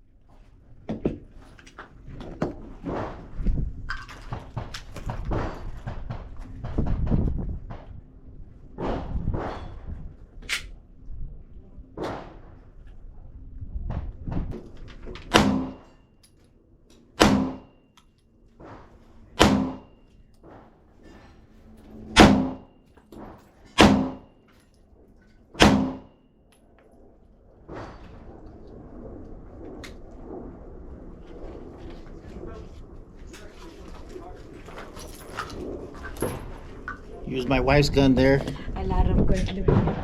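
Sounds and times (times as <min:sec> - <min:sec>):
pistol shots: 0:15.3 - 0:15.8, 0:17.2 - 0:17.7, 0:19.4 - 0:19.9, 0:22.2 - 0:22.7, 0:23.8 - 0:24.3, 0:25.6 - 0:26.1.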